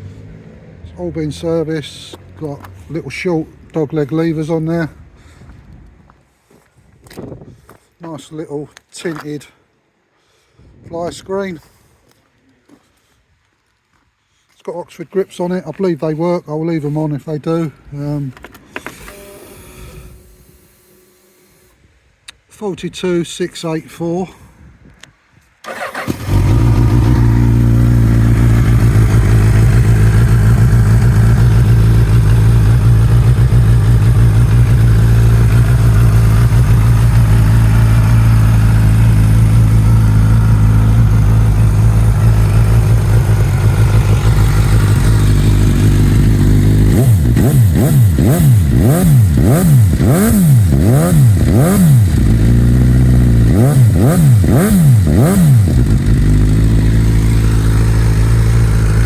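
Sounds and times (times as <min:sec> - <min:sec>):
motorcycle engine idling and revving: 0:00.0 - 0:03.7, 0:25.6 - 0:59.0.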